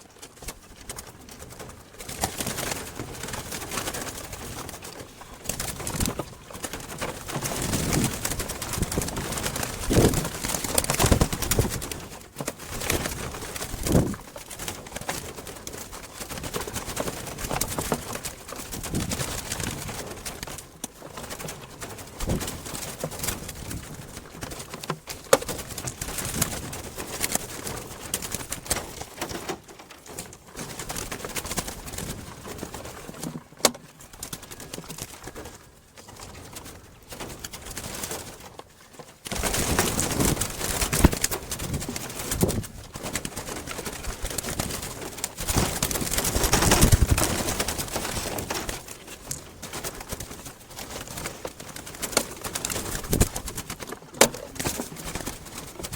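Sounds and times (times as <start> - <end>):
doves: 0.0 - 55.9
rustling: 0.0 - 55.9.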